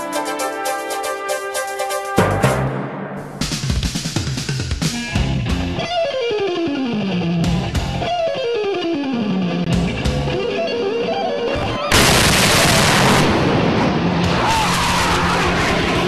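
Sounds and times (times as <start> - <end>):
rock music: 0.0 - 12.1, 13.0 - 16.0
descending guitar run: 5.0 - 16.0.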